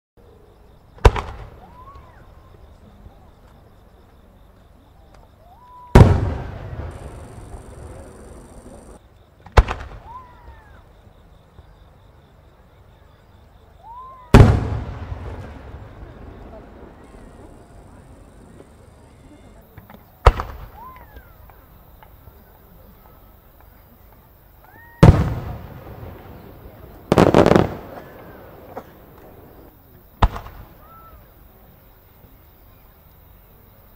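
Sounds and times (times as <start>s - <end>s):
firework shell booms: 1.0s - 1.6s, 6.0s - 8.0s, 9.5s - 10.2s, 14.3s - 16.9s, 20.2s - 20.9s, 25.0s - 29.6s, 30.2s - 30.8s
small firework cracks: 1.0s - 2.2s, 5.9s - 10.8s, 19.7s - 31.2s
firework shells bursting: 25.0s - 30.8s.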